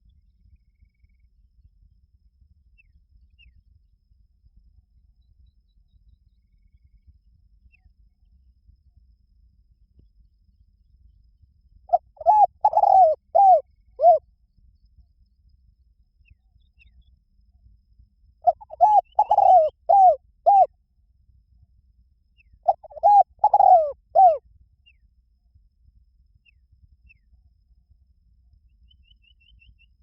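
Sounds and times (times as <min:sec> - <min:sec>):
dove cooing: 0:11.9 - 0:14.2, 0:18.5 - 0:20.7, 0:22.7 - 0:24.4.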